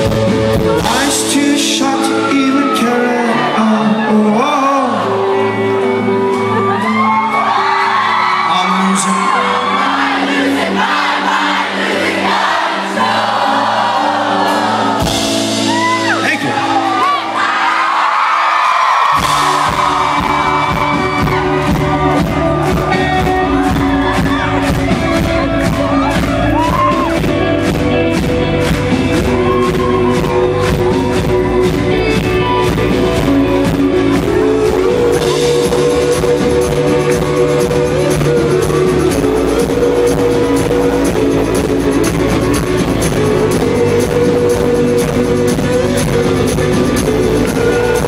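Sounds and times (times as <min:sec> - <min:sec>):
drums keeping a steady beat: 0:00.0 - 0:02.1, 0:14.6 - 0:16.6, 0:19.1 - 0:48.0
rock band playing live: 0:00.0 - 0:17.8, 0:18.6 - 0:48.0
electric guitars: 0:00.0 - 0:48.0.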